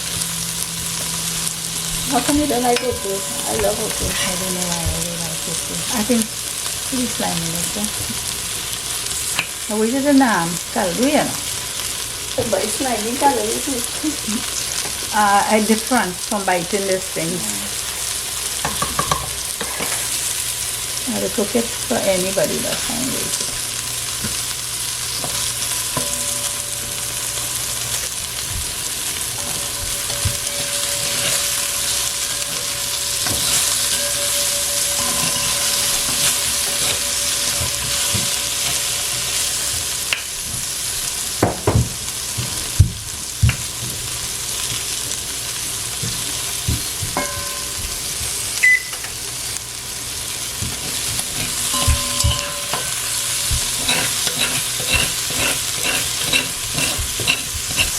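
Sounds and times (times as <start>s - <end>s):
okra sizzling in oil: 0.0s - 57.9s
spoon knocking against pot: 18.6s - 19.4s, 29.4s - 40.2s, 46.7s - 48.0s, 51.4s - 57.9s.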